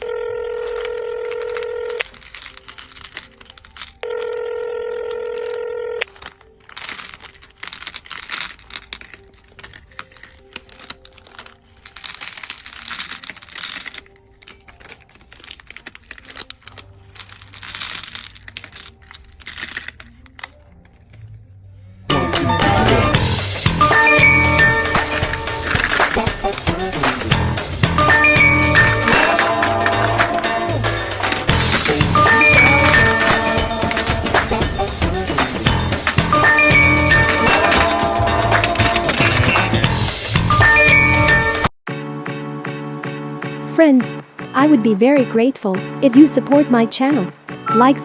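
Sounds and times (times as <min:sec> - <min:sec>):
telephone ringing tone: 0:00.0 - 0:02.1, 0:04.0 - 0:06.1, 0:22.1 - 0:39.8
crinkling and rustling: 0:00.0 - 0:24.0, 0:24.8 - 0:28.1, 0:28.7 - 0:40.4.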